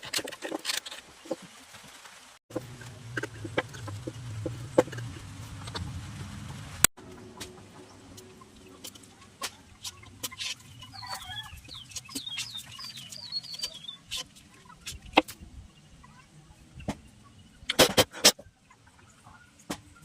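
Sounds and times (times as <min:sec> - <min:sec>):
chicken clucking: 0:07.8 - 0:15.3.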